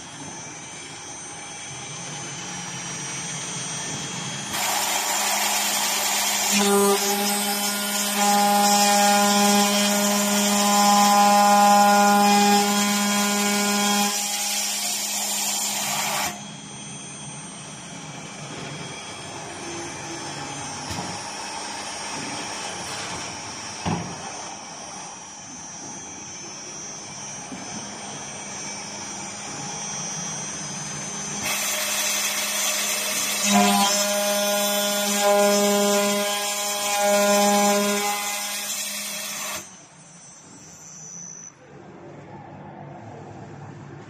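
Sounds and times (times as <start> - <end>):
machine hum: 0.0 - 38.5
spindle hissing and whining: 3.9 - 22.8.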